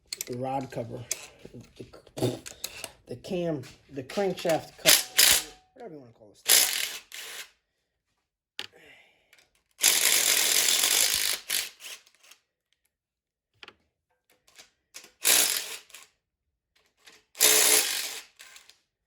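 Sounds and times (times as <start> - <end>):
ratchet wrench ratcheting: 4.2 - 5.6, 6.5 - 7.4, 9.8 - 12.0, 15.2 - 16.0, 17.4 - 18.7
single ratchet clicks: 4.4 - 5.6.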